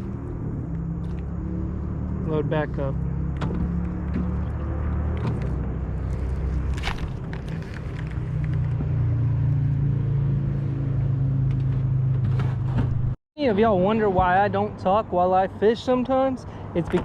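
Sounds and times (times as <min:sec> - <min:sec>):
engine running steadily: 0:00.0 - 0:13.2.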